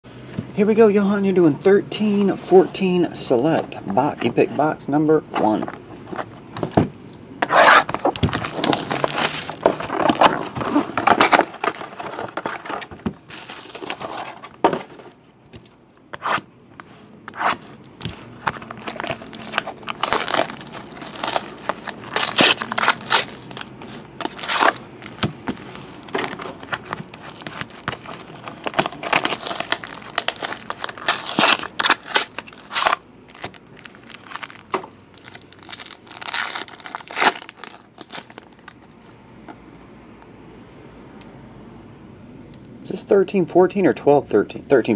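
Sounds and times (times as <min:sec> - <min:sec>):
plastic and foil wrapping tearing: 0:07.6 - 0:14.5, 0:17.3 - 0:25.2, 0:25.8 - 0:38.8.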